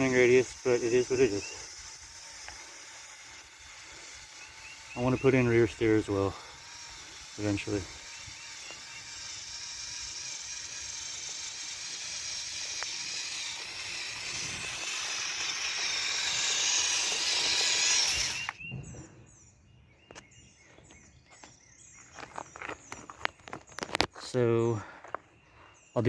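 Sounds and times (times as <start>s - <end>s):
toy motors and gears whining: 0.0s - 19.0s.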